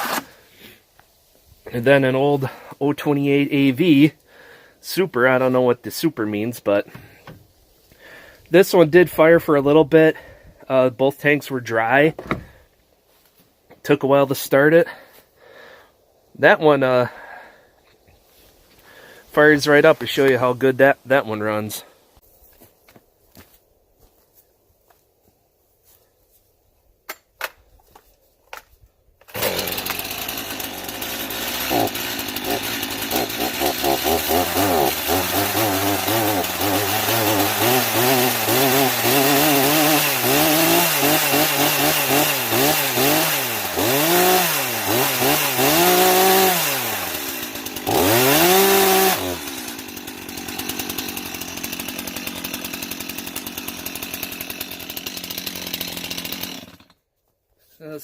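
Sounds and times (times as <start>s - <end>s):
chainsaw starter clicks: 0.0s - 0.3s, 29.2s - 57.0s
chainsaw revving: 0.0s - 0.7s, 29.2s - 57.0s.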